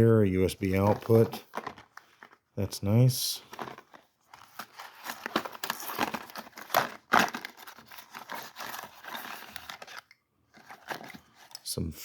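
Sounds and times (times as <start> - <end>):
packaging rustling and crinkling: 0.6 - 2.5, 3.3 - 11.6.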